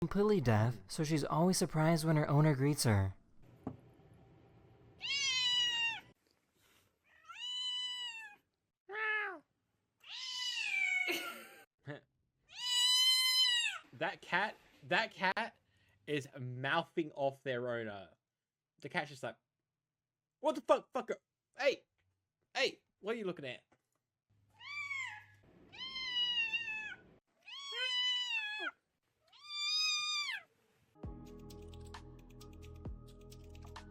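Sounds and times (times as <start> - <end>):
cat meowing: 5.0 - 6.1, 7.1 - 9.4, 10.0 - 11.1, 12.5 - 13.8, 24.6 - 30.5
background music: 31.0 - 33.9.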